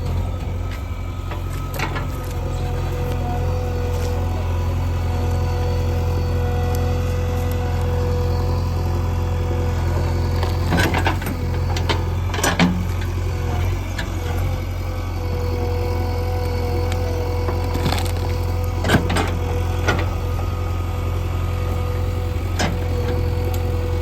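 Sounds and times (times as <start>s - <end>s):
diesel engine running: 0.0s - 24.0s
wood and roots cracking: 16.8s - 19.0s.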